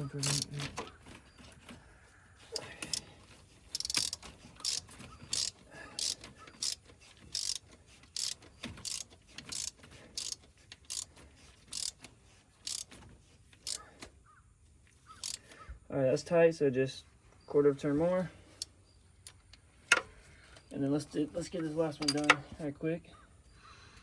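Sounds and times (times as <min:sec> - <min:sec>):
hand ratchet clicking: 0:00.0 - 0:01.8, 0:02.5 - 0:14.0, 0:15.1 - 0:15.6.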